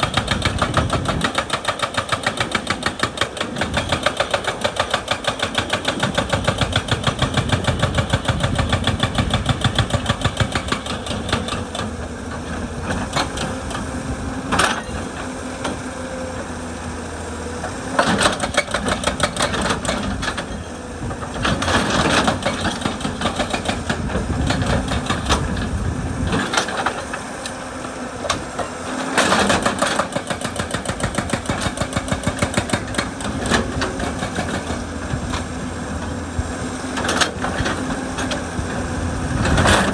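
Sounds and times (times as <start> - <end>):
hydraulic breaker hammering stone: 0.0 - 12.1, 17.6 - 27.3, 28.2 - 35.5
diesel engine running: 0.0 - 39.9.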